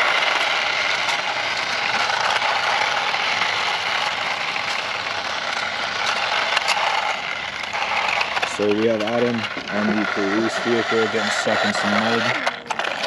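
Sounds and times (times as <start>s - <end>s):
toy car motors whirring: 0.0s - 13.0s.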